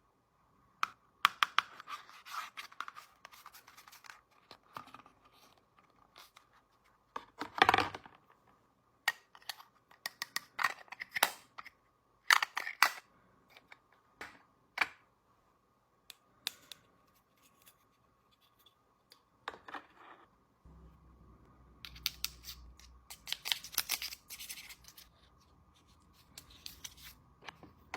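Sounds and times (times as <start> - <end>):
faint high hum: 20.4 - 27.9.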